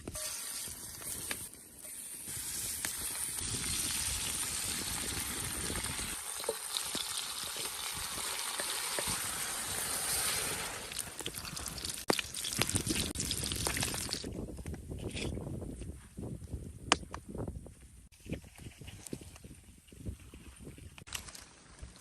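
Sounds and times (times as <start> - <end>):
food sizzling in hot oil: 0.0 - 14.2.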